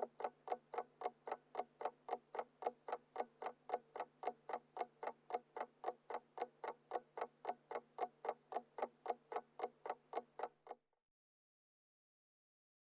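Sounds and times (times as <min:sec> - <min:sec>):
alarm clock ticking: 0:00.0 - 0:10.6.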